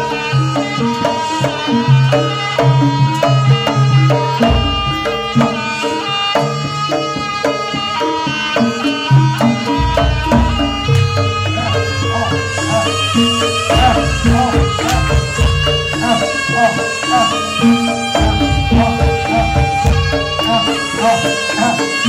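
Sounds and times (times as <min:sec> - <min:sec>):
hand drums: 0:00.0 - 0:22.0
struck metal percussion: 0:00.0 - 0:22.0
deep drum or gong strokes: 0:09.8 - 0:16.4.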